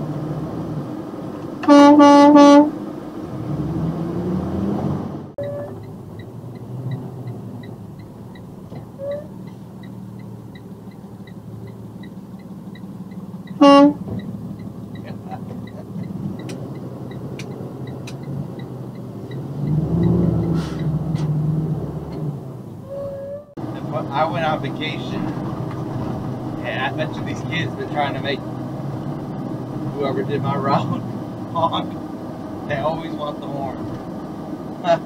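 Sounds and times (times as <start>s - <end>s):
engine and road rumble: 0.0s - 35.0s
truck horn blast: 1.6s - 2.8s, 13.6s - 14.1s, 22.8s - 23.6s
light even ticking: 5.4s - 21.2s.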